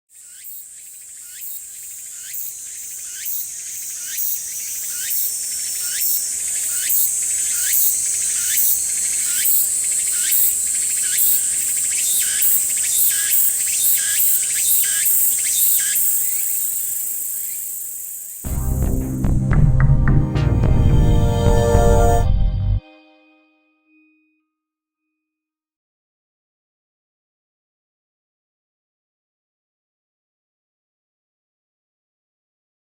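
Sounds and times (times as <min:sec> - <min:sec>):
cicada buzzing song: 0:00.1 - 0:18.5.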